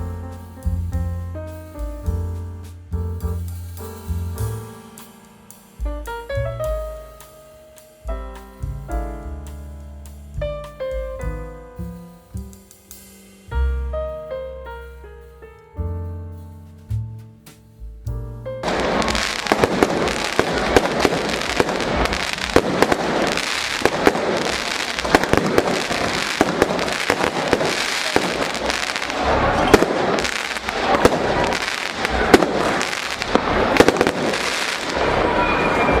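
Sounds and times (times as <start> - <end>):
piano music: 0.0 - 36.0
fireworks bangs: 18.6 - 36.0
fireworks crackling: 18.6 - 36.0.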